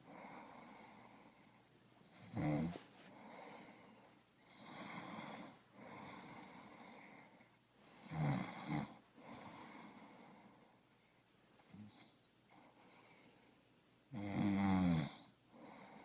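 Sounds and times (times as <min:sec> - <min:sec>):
person breathing heavily: 0:02.7 - 0:08.1.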